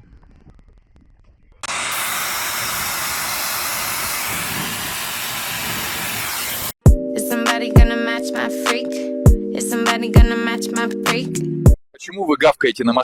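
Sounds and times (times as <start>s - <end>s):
loud steady hiss: 1.6s - 6.8s.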